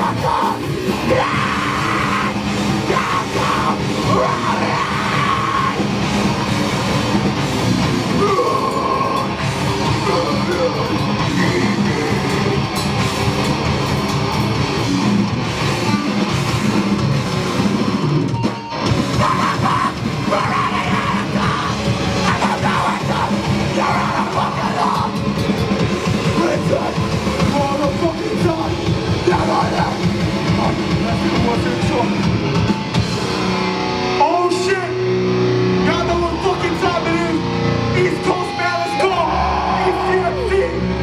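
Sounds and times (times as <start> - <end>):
distorted electric guitars: 0.0 - 41.0
drum kit: 0.0 - 41.0.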